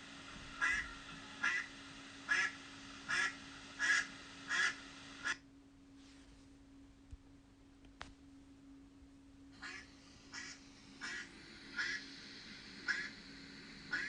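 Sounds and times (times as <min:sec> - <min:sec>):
duck quacking: 0:00.6 - 0:01.7, 0:02.3 - 0:05.4, 0:09.6 - 0:12.0, 0:12.8 - 0:13.2.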